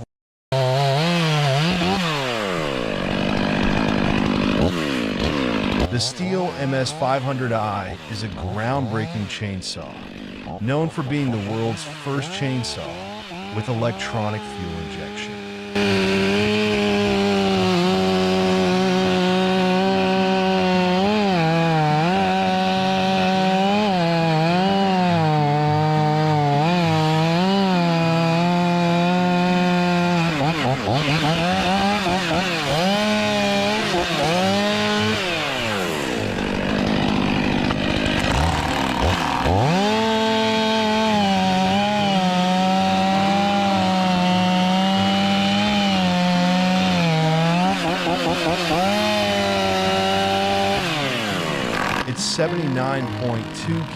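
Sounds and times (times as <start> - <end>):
chainsaw cutting wood: 0.0 - 53.9.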